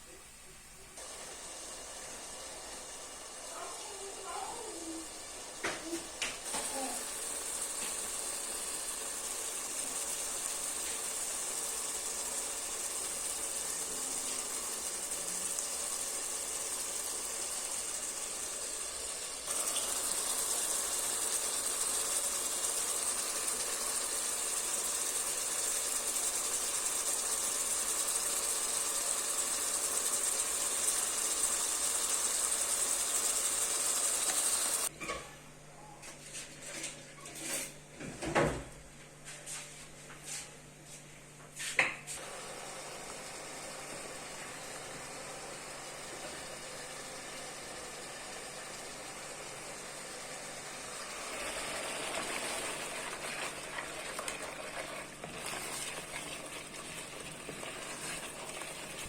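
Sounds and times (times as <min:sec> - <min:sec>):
fish sizzling in hot oil: 0:01.0 - 0:34.9.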